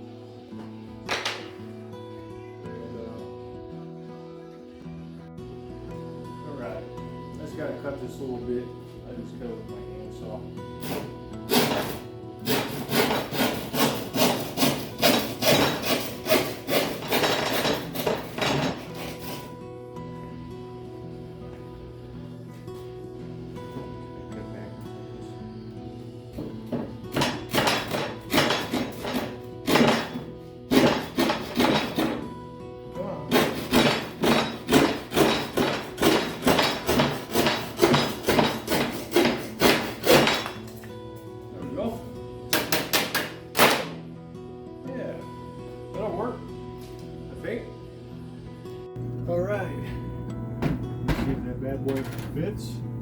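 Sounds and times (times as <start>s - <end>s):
handsaw cutting wood panel: 10.9s - 19.5s, 26.8s - 32.3s, 33.3s - 40.6s.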